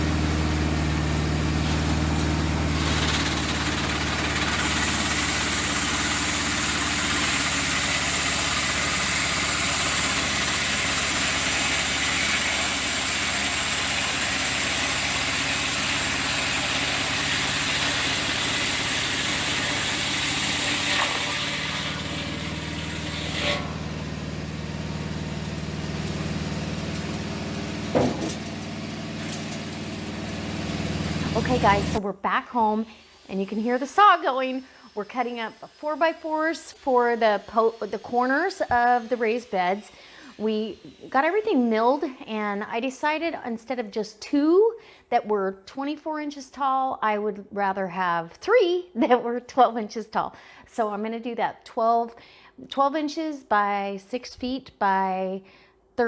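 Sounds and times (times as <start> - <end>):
engine-driven saw cutting log: 0.0 - 43.2
sharp knock: 27.9 - 28.4.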